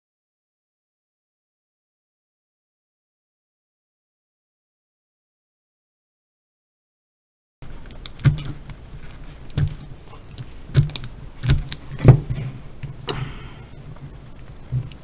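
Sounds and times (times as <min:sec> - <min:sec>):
plastic cube knocks and clicks: 0:07.9 - 0:08.8, 0:09.5 - 0:12.4.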